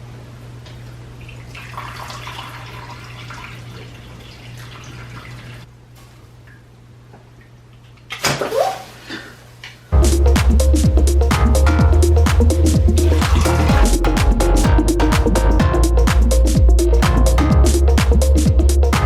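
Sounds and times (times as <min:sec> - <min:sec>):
water splashing and trickling: 0:01.2 - 0:05.7.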